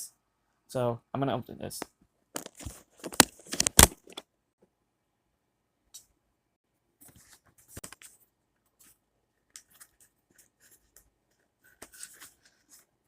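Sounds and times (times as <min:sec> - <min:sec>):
toy packaging being opened: 0:02.4 - 0:04.2.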